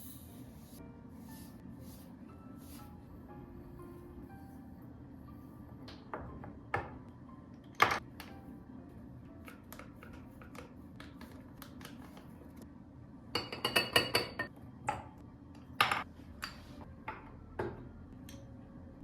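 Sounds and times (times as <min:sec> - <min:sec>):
dishes and cutlery clinking: 0:13.4 - 0:15.1.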